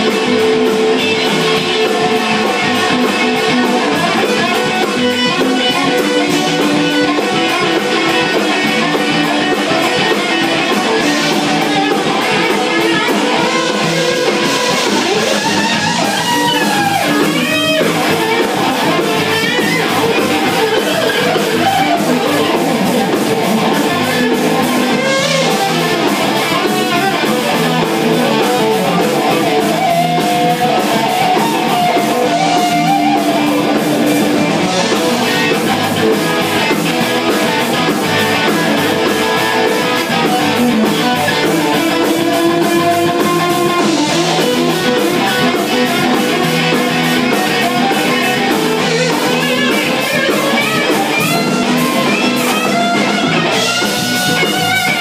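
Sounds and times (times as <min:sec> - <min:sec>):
bent wavering guitar notes: 0:00.0 - 0:55.0
electric guitar jam music: 0:00.0 - 0:55.0.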